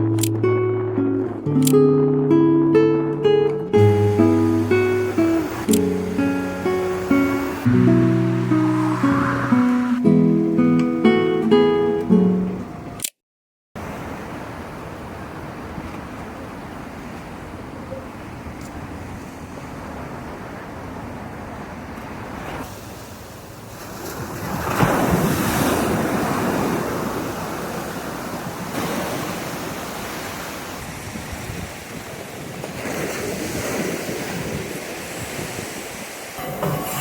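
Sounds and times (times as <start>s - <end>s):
ocean waves breaking on beach: 3.8s - 10.2s, 13.8s - 37.0s.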